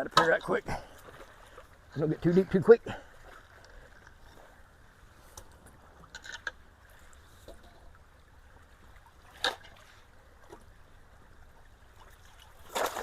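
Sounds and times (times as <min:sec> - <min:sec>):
water running into culvert: 0:11.8 - 0:13.0.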